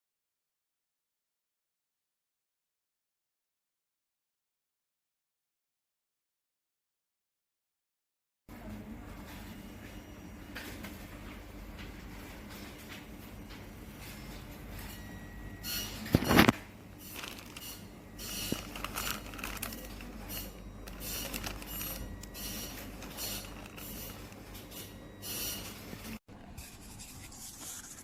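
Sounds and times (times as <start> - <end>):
steady low hum: 10.0 - 26.2
objects rustling being handled: 16.0 - 26.2.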